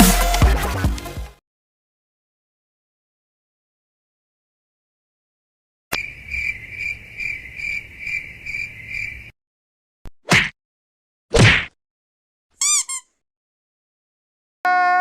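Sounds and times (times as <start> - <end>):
cricket chirping: 5.9 - 9.3.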